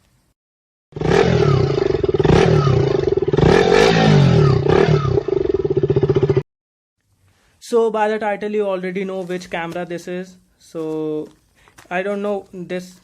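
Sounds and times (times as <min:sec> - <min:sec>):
motorcycle engine revving hard: 0:00.9 - 0:06.4.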